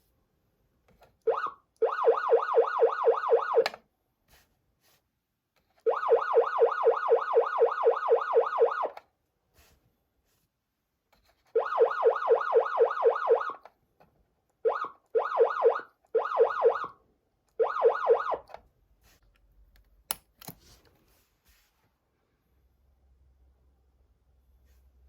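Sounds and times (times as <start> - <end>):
electronic yelp siren: 1.3 - 3.7, 5.9 - 9.0, 11.5 - 13.6, 14.6 - 17.0, 17.6 - 18.5.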